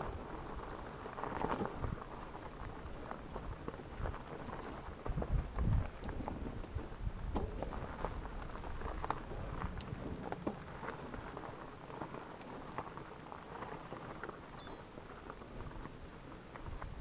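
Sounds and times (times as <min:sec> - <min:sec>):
bike tyres crunching over ground: 0:00.0 - 0:17.0
small clicks and rattles: 0:00.0 - 0:17.0
brief high chirp: 0:14.6 - 0:14.8.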